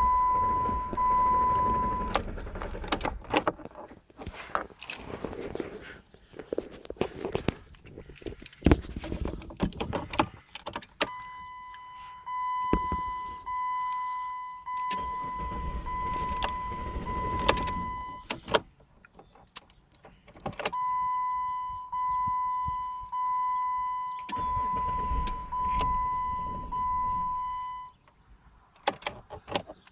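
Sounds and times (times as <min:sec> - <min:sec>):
car warning chime beeping: 0:00.0 - 0:02.4, 0:11.1 - 0:18.4, 0:20.7 - 0:28.0
low engine rumble: 0:00.0 - 0:03.5, 0:14.6 - 0:18.5, 0:21.4 - 0:27.9.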